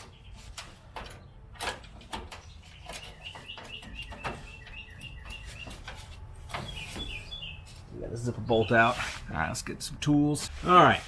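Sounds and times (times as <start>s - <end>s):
small bird chirping: 2.4s - 7.8s.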